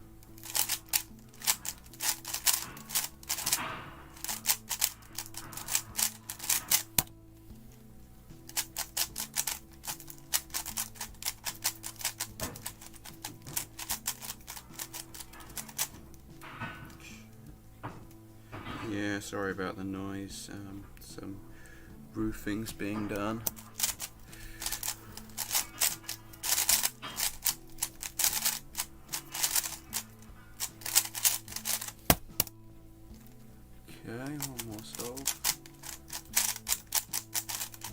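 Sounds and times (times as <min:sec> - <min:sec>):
puzzle cube clicking: 0:00.0 - 0:07.2, 0:08.4 - 0:17.0, 0:23.4 - 0:32.6, 0:34.2 - 0:37.9
low steady hum: 0:00.0 - 0:37.9.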